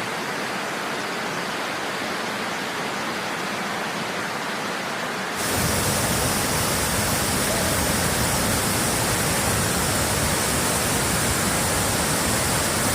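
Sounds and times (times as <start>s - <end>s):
waterfall rushing: 0.0s - 12.9s.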